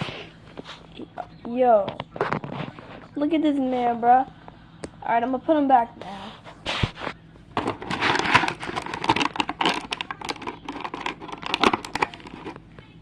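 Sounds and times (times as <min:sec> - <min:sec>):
plastic packaging crinkling: 0:07.6 - 0:12.7.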